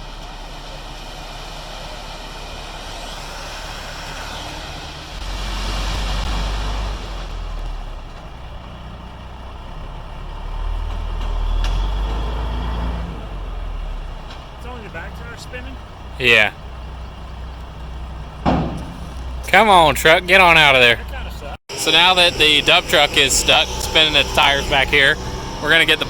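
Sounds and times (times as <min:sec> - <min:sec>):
tire spinning in place: 0:00.0 - 0:26.0
truck engine revving: 0:00.0 - 0:26.0.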